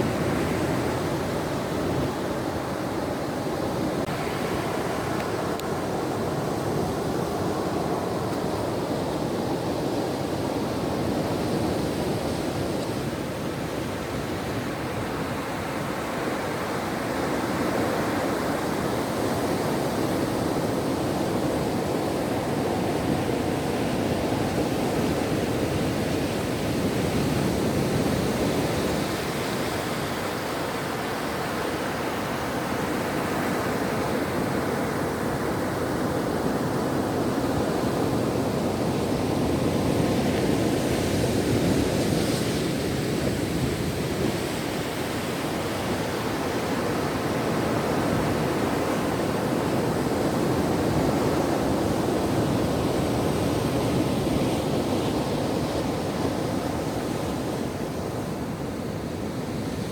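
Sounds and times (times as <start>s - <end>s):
ocean waves washing ashore: 0.0s - 59.9s.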